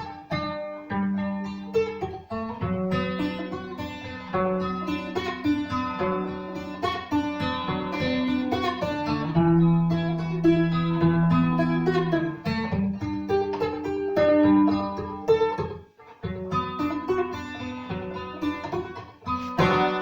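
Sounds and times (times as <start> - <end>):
plucked dulcimer melody: 2.9 - 15.2, 16.6 - 20.0.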